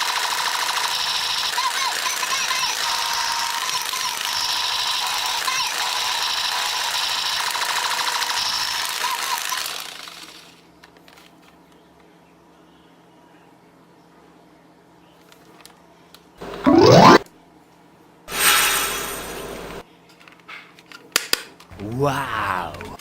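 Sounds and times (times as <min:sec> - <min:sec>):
toy gun electronic rattle: 0:00.0 - 0:02.6, 0:07.3 - 0:10.5
high beeping tones: 0:16.7 - 0:17.2.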